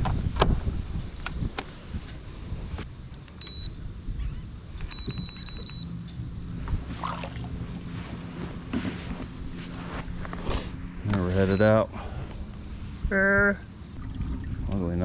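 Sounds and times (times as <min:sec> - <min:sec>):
wind: 0:00.0 - 0:15.0
electronic beeps: 0:03.4 - 0:05.9
water noise: 0:06.6 - 0:09.0, 0:13.0 - 0:15.0.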